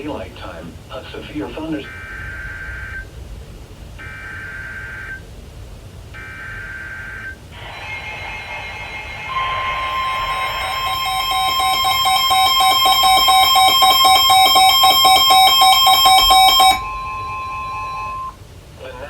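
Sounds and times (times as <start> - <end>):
steady high warning tone: 6.2 - 18.5
rapid electronic alarm beeps: 9.3 - 18.3.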